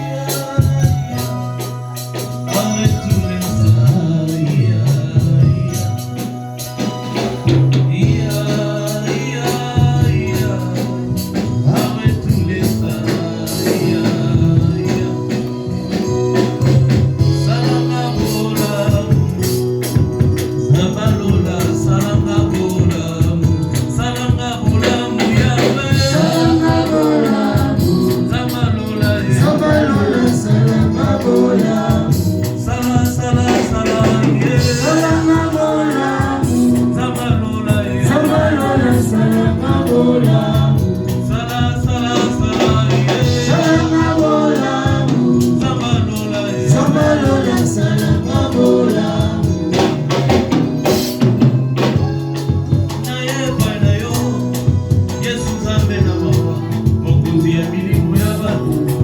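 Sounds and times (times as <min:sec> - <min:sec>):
gospel singing: 0:00.0 - 0:59.0
steady percussion beat: 0:00.0 - 0:59.0
sustained bass: 0:00.0 - 0:59.0.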